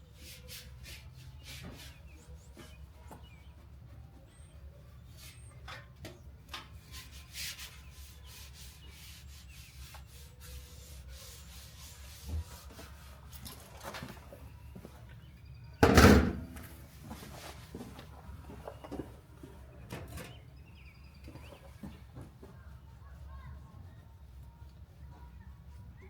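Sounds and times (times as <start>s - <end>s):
rubbing and wiping: 0.1s - 4.4s, 6.7s - 14.2s.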